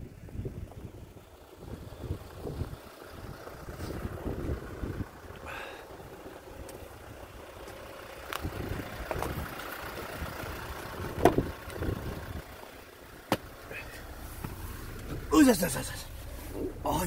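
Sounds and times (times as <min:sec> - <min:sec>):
wind buffeting microphone: 0:00.0 - 0:05.3, 0:08.4 - 0:12.5.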